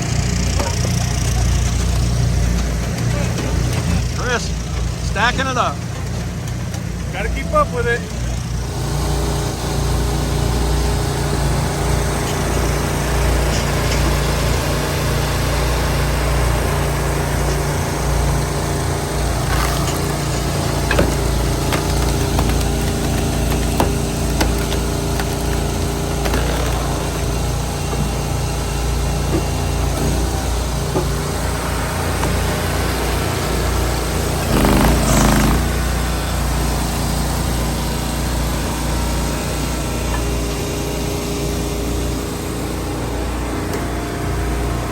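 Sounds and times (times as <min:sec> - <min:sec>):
engine running steadily: 0:00.0 - 0:44.9
sharp knocks and cracks: 0:18.4 - 0:31.4.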